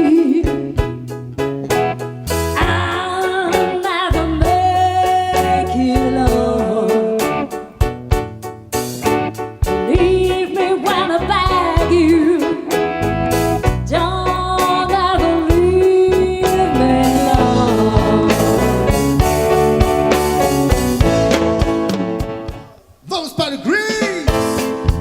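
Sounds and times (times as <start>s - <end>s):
person singing: 0.0s - 0.8s, 2.6s - 7.7s, 14.0s - 19.2s, 23.1s - 25.0s
bass line: 0.0s - 6.9s, 11.2s - 22.6s, 24.2s - 25.0s
drum beat: 17.2s - 22.8s, 23.7s - 25.0s.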